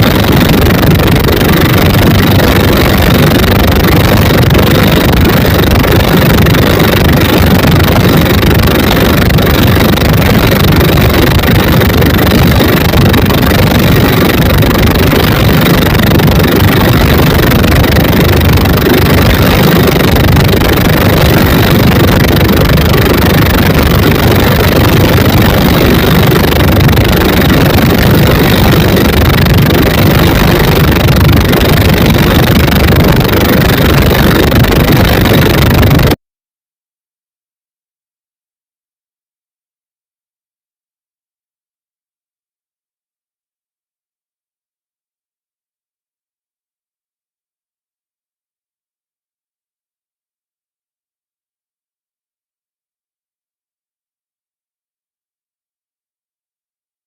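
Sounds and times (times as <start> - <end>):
diesel boat engines running: 0.0 - 36.2.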